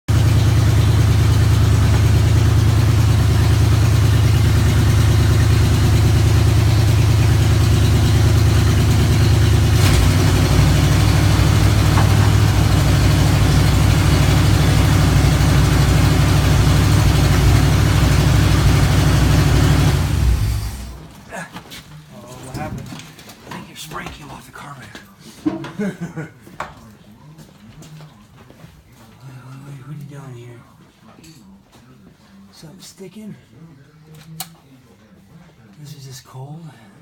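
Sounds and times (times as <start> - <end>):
car engine idling: 0.1 - 21.1.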